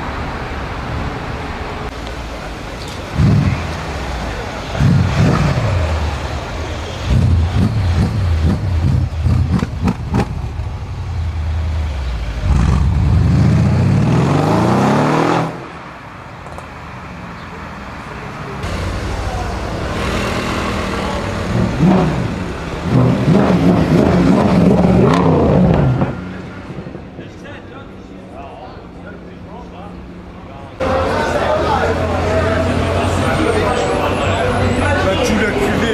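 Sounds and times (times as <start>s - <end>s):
car engine revving: 0.0s - 35.9s
sharp exhaust pops: 2.8s - 6.2s, 6.9s - 10.6s.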